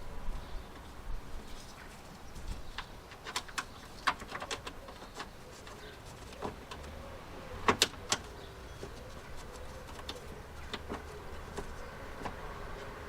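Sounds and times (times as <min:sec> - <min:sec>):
pigeon cooing: 0:04.4 - 0:13.0.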